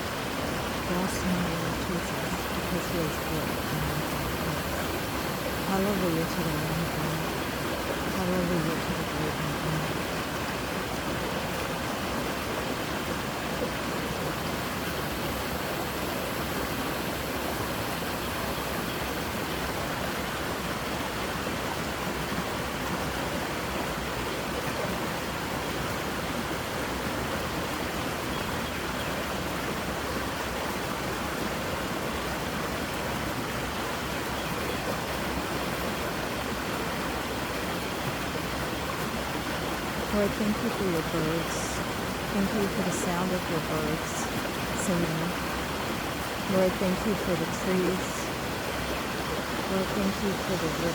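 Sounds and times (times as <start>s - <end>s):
creek water rushing: 0.0s - 50.9s.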